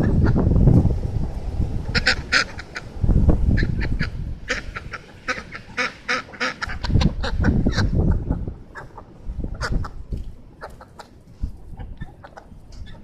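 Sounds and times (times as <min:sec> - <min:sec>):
wind buffeting microphone: 0:00.0 - 0:13.0
ducks quacking: 0:01.9 - 0:10.0, 0:10.6 - 0:11.1.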